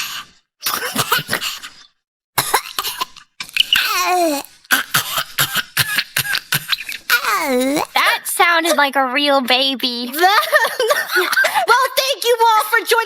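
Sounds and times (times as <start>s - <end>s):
person imitating baby coughing: 0.7s - 1.6s, 2.4s - 3.2s, 3.8s - 8.0s
whimpering cry: 3.8s - 4.5s, 7.1s - 7.9s.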